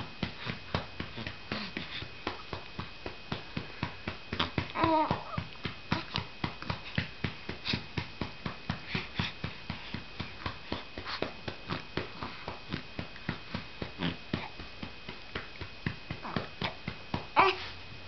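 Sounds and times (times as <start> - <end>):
patting on baby's back: 0.0 - 17.9
baby vocal sound: 4.4 - 5.4, 17.4 - 17.7.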